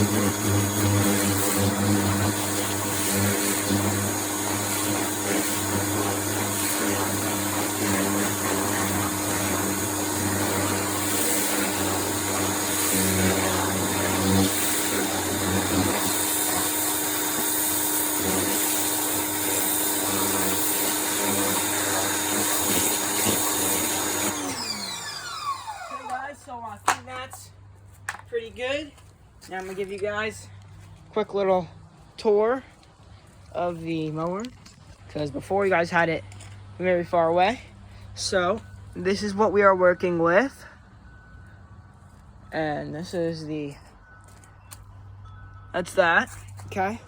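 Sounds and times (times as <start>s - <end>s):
water jet hissing: 0.0s - 25.6s
pressure washer motor humming: 0.0s - 26.3s.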